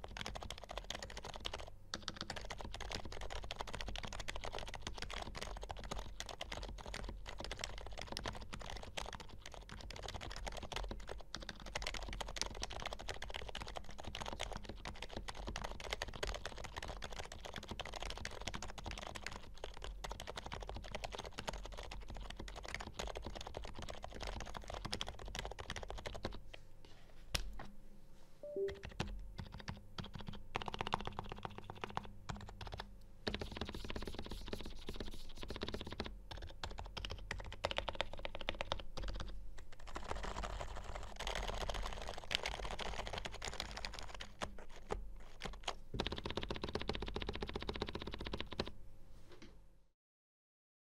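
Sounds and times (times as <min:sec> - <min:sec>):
fast typing on keyboard: 0:00.0 - 0:26.4, 0:28.6 - 0:48.7.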